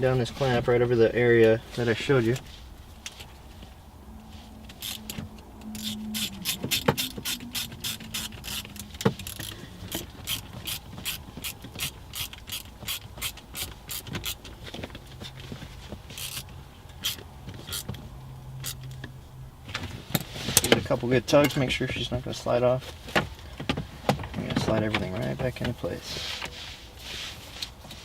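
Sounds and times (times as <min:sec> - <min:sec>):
hand ratchet clicking: 0:04.7 - 0:15.2, 0:16.1 - 0:18.0, 0:18.6 - 0:19.1.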